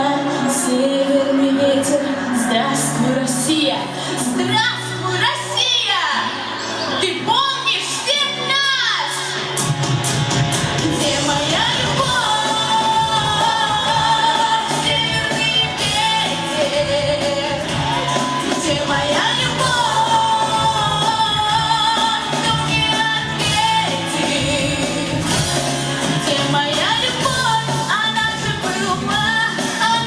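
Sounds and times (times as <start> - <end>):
woman singing: 0.0 - 6.2, 10.8 - 30.0
pop-rock backing track: 9.2 - 30.0.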